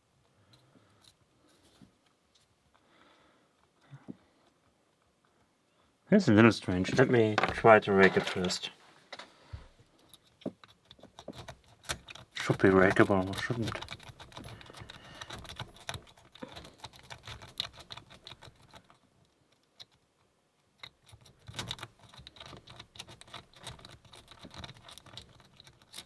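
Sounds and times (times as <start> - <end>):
lock pick clicking and scratching: 10.0 - 26.0.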